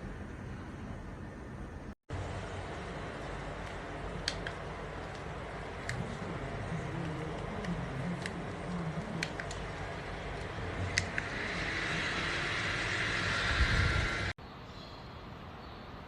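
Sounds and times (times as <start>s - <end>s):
neck fan airy hiss: 2.1s - 14.4s
fan switch clicks: 3.6s - 6.0s, 10.4s - 11.4s.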